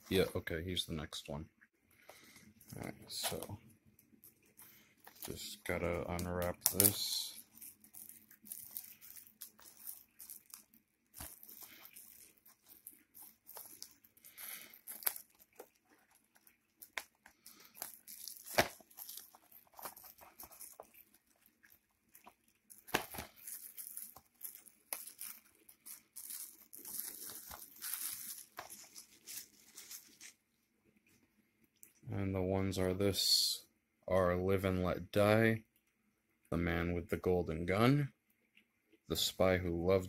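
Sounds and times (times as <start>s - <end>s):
plastic wrapping tearing and crinkling: 4.6s - 30.4s
packaging clicks and snaps: 11.2s - 21.3s.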